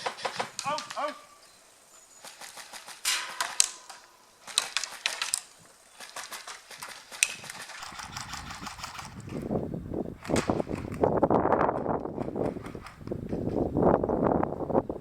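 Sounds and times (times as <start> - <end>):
airsoft guns firing bursts: 2.2 - 3.6, 4.4 - 9.4.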